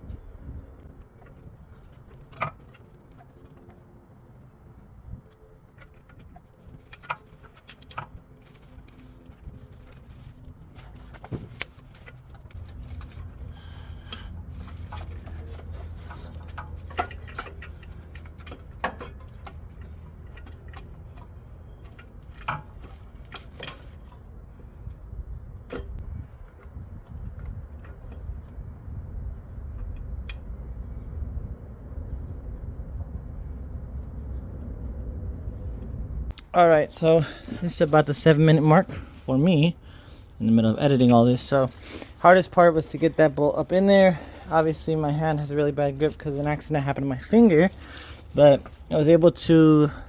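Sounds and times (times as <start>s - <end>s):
low steady hum: 0.0s - 50.0s
metal tools clinking: 5.8s - 24.2s.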